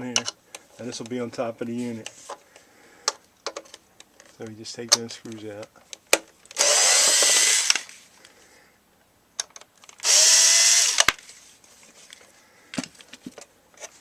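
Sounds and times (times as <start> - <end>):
faint handling clicks: 2.0 - 6.6
drill click: 6.5 - 7.9, 10.0 - 11.2
power drill spinning: 6.6 - 8.0, 10.0 - 11.3.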